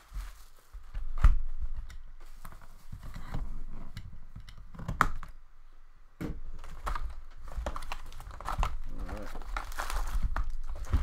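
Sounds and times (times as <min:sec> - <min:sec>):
card packs clicking and tapping: 0:06.6 - 0:11.0.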